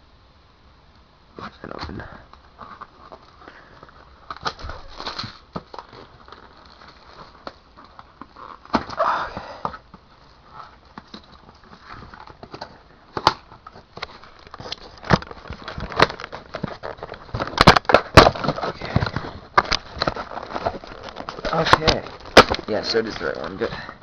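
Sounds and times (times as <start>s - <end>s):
packaging rustling and crackling: 2.2s - 24.0s
box clicks and knocks: 10.9s - 23.6s.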